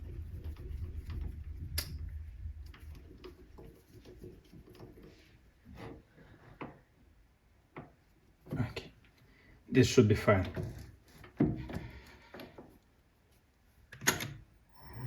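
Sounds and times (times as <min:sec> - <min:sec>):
low hum: 0:00.0 - 0:03.4, 0:14.7 - 0:15.0.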